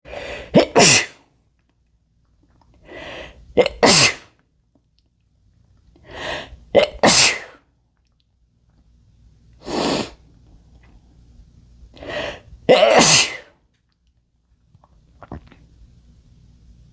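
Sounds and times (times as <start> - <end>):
man sneezing: 0.5 - 1.2, 3.6 - 4.3, 6.8 - 7.6, 12.7 - 13.6
sharp in-breath: 2.8 - 3.4, 6.0 - 6.6, 12.0 - 12.5.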